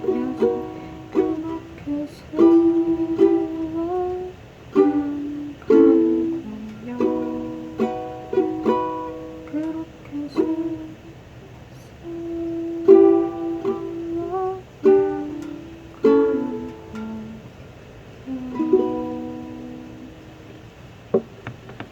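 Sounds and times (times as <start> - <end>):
ukulele played slowly: 0.0 - 20.7.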